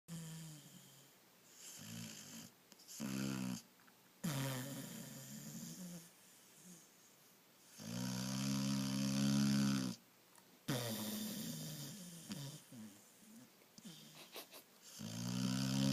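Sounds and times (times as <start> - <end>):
rasping snores: 0.1 - 3.6, 4.2 - 6.1, 7.7 - 10.0, 10.7 - 14.2, 14.9 - 15.9.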